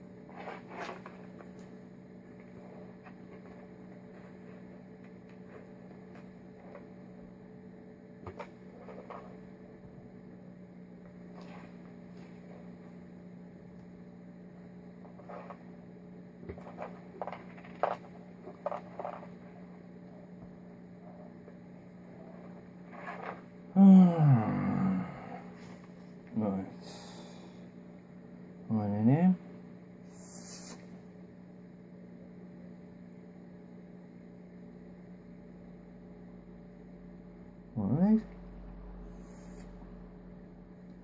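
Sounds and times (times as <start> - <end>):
low electrical hum: 0.0 - 41.0.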